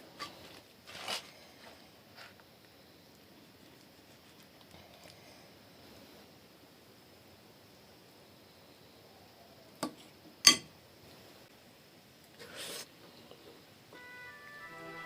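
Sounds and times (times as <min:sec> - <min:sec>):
short scraping rustle: 0:00.2 - 0:02.4.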